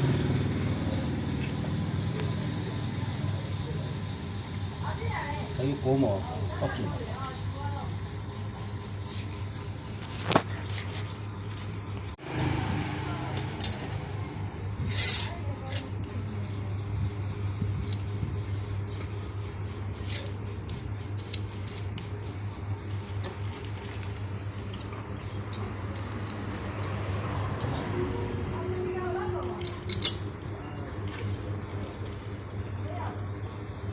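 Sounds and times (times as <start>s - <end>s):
metal tools clinking: 14.8s - 16.0s, 24.0s - 27.3s, 29.6s - 30.3s.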